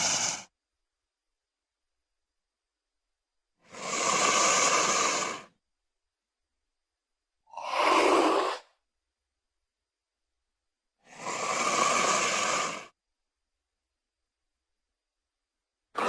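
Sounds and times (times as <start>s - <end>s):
creature breathy hissing: 0.0s - 0.5s, 3.6s - 5.5s, 7.5s - 8.7s, 11.0s - 12.9s.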